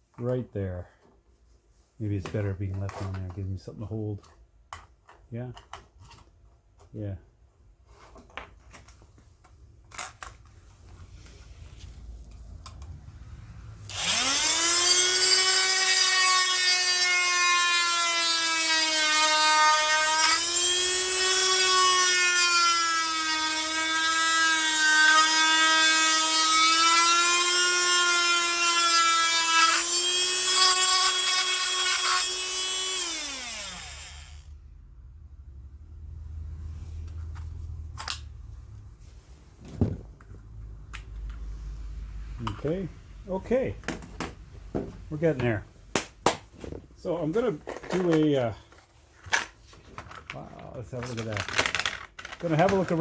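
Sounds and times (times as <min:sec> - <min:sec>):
small power tool whining: 0:13.8 - 0:34.5.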